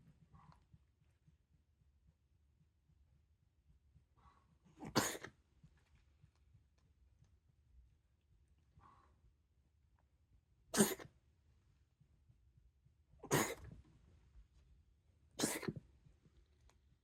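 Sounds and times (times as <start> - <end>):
cat reverse sneezing: 10.8 - 11.1, 13.2 - 13.6, 15.4 - 15.8.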